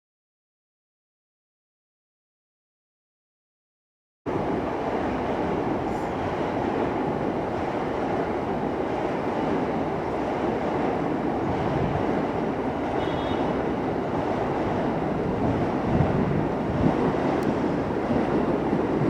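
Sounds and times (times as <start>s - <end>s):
train passing close by: 4.3s - 19.0s.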